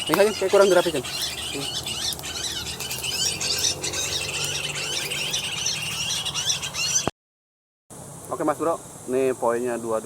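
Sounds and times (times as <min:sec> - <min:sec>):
small birds chirping: 0:00.0 - 0:07.1.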